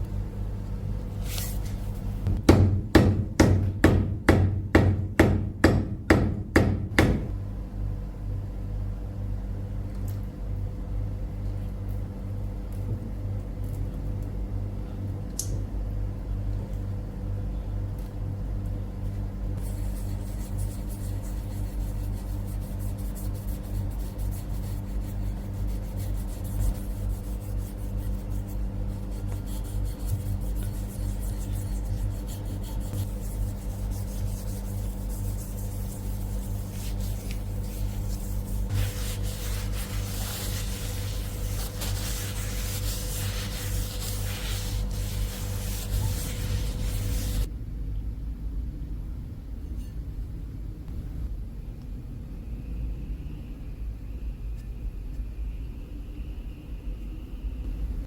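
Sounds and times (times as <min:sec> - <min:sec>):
low mechanical hum: 0:00.0 - 0:58.0
steady rubbing: 0:19.6 - 0:47.5.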